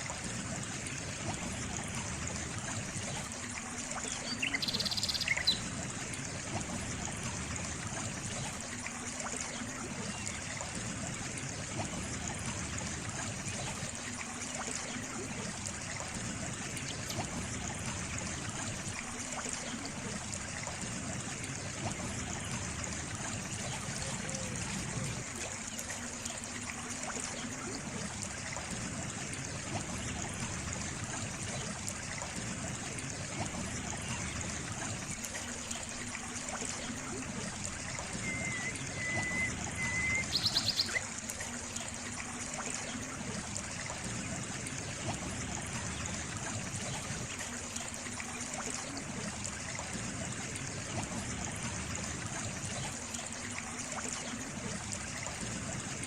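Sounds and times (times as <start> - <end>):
water trickling in stream: 0.0 - 56.0
thin faint whistle: 38.1 - 41.0.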